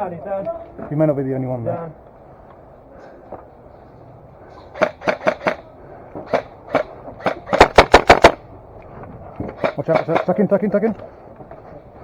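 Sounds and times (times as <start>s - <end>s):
airsoft rifle shots: 4.8s - 5.7s, 6.3s - 8.4s, 9.6s - 10.4s.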